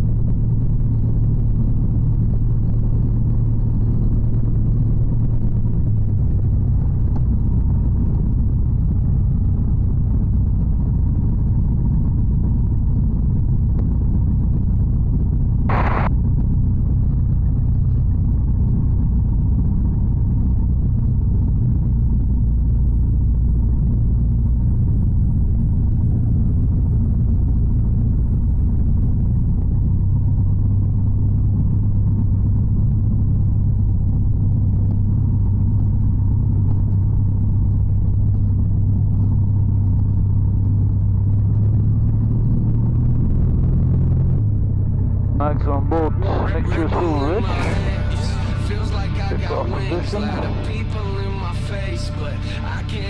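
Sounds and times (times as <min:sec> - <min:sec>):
propeller plane engine drone: 0:00.0 - 0:53.0.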